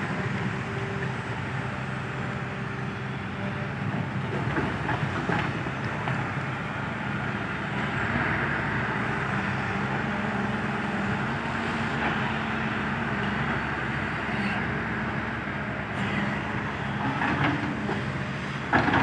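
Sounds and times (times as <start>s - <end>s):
heavy diesel engine running: 0.0s - 19.0s.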